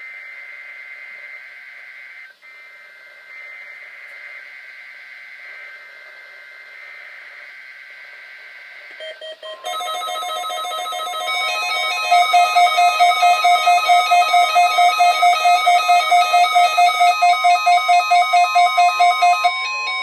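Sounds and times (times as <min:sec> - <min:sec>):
steady alarm tone: 0:07.7 - 0:20.0
rapid patterned beeps: 0:09.0 - 0:20.0.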